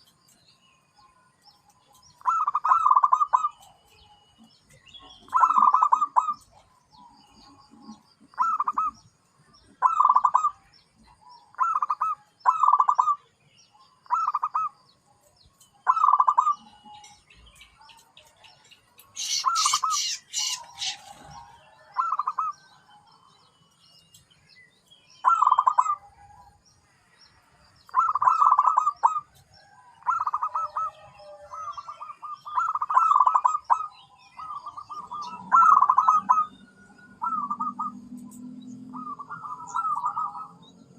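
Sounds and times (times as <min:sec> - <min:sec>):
dove cooing: 0:02.1 - 0:03.9, 0:05.0 - 0:13.3, 0:15.8 - 0:17.0, 0:19.2 - 0:22.8, 0:25.2 - 0:26.5, 0:27.9 - 0:29.4, 0:30.0 - 0:38.2, 0:38.9 - 0:40.9.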